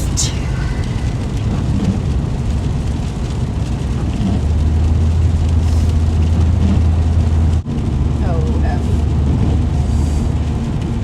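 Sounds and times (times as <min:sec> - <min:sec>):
road hiss: 0:00.0 - 0:01.8, 0:05.5 - 0:06.2, 0:09.7 - 0:10.6
car engine and tyre rumble: 0:00.0 - 0:11.0.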